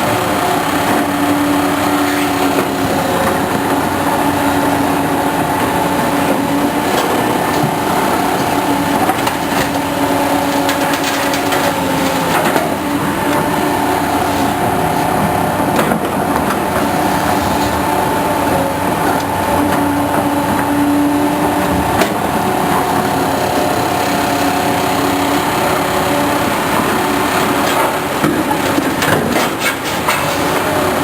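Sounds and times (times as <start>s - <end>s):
excavator engine and hydraulics: 0.0s - 31.0s
metal clanks and knocks: 27.5s - 30.6s.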